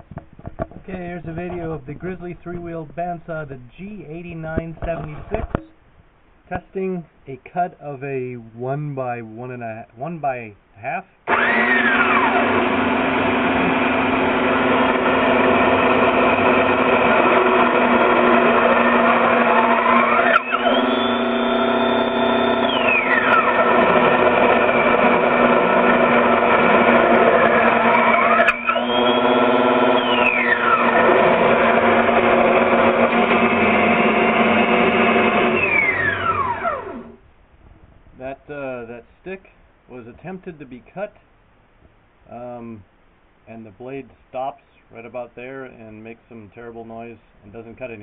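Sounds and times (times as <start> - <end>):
bandsaw running with hum: 11.3 - 37.2.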